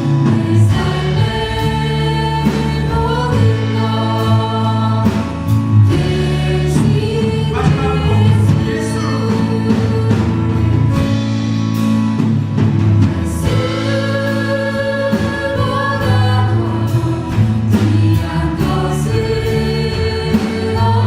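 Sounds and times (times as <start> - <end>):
praise band and singers: 0.0 - 21.0
steady bass: 0.0 - 21.0.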